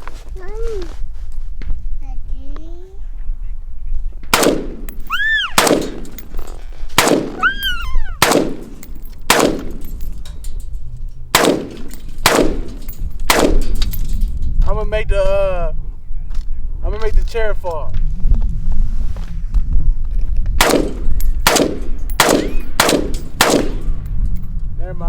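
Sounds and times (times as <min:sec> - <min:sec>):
wind rumble on microphone: 0:00.0 - 0:25.0
gunshots with echo: 0:04.3 - 0:10.1, 0:11.3 - 0:13.9, 0:20.6 - 0:24.0.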